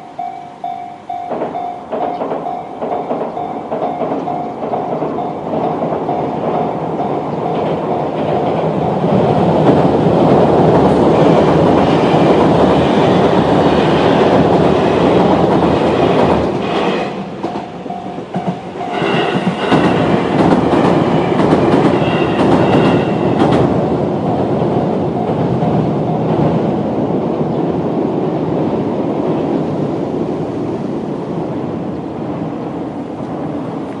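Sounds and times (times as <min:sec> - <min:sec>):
crossing warning bell: 0:00.0 - 0:10.2, 0:17.1 - 0:27.0
train wheels clattering on rails: 0:00.0 - 0:34.0
high squealing tones: 0:16.7 - 0:20.2.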